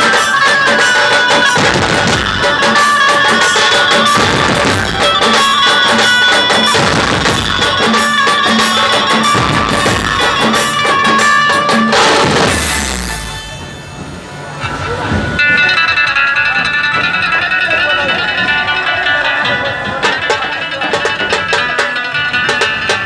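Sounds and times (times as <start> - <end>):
street band drum-heavy music: 0.0 - 23.0.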